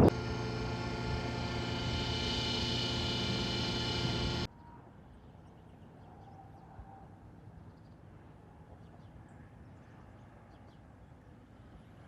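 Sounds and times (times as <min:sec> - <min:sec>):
engine drone: 0:00.0 - 0:04.5.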